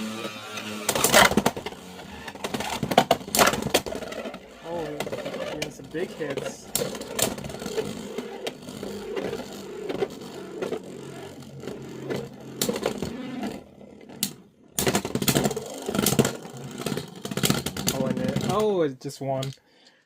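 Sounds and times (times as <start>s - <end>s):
spinning tops whirring: 0.0s - 18.8s.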